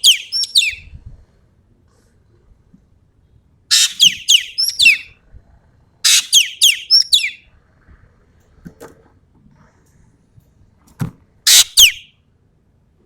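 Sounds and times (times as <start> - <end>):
songbird singing: 0.0 - 0.9, 3.7 - 5.2, 6.0 - 7.4, 11.5 - 12.1.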